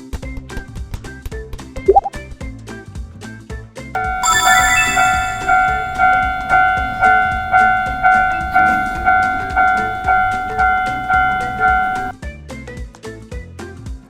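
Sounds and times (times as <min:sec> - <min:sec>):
background music: 0:04.0 - 0:12.1
crossing alarm bell ringing: 0:04.0 - 0:12.2.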